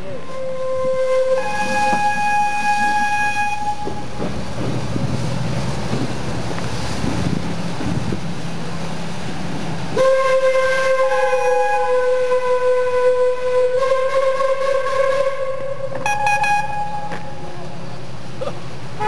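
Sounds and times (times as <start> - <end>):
train rumble and clatter: 0.0 - 19.0
train horn chord: 0.1 - 4.2, 10.0 - 17.5.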